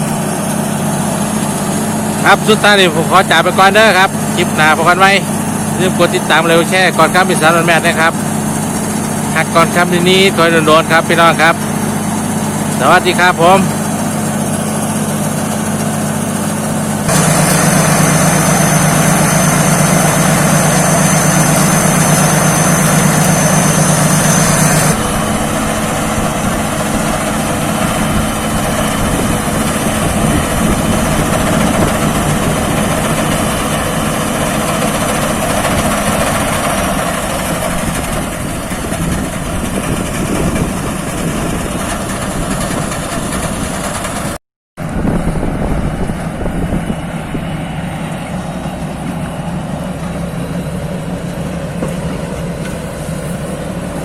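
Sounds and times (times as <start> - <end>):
harvester engine running: 0.0 - 54.0
thin high whine: 17.0 - 31.4.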